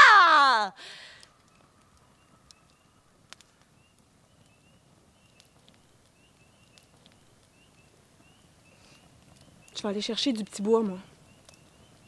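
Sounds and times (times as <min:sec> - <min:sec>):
faint sharp clicks: 0:01.2 - 0:04.6, 0:05.3 - 0:07.5, 0:11.4 - 0:11.7.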